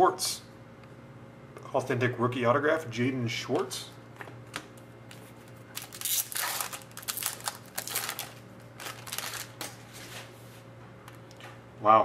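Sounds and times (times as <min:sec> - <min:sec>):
cards and wrappers rustling: 0:05.1 - 0:10.3.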